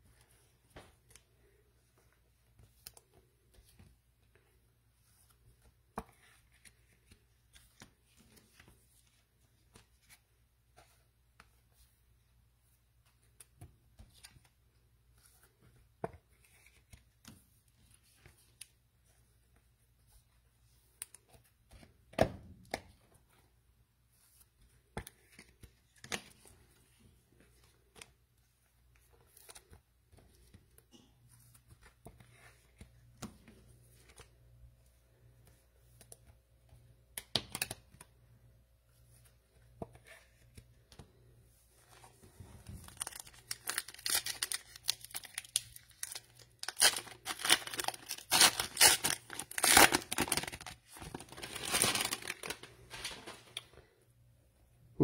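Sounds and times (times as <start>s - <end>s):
plastic wrapper crinkling: 42.8s - 53.7s.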